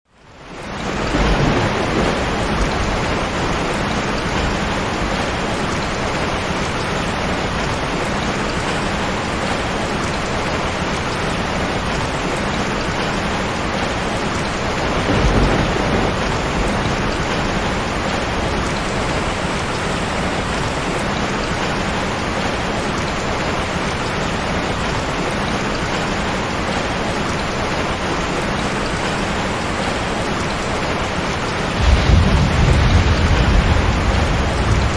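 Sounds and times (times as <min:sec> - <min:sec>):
heavy rain pouring: 0:00.1 - 0:34.9
thunder rumbling: 0:00.8 - 0:06.2, 0:13.7 - 0:20.8, 0:31.7 - 0:34.9.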